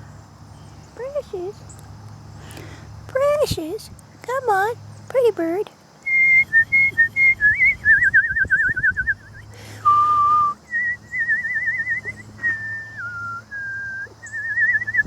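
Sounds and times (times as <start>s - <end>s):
person whistling: 6.1s - 15.0s.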